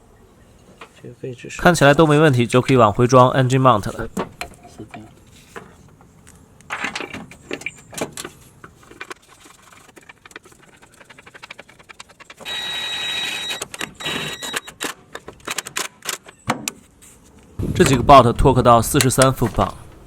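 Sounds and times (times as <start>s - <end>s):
cordless power tool whining: 12.4s - 14.7s.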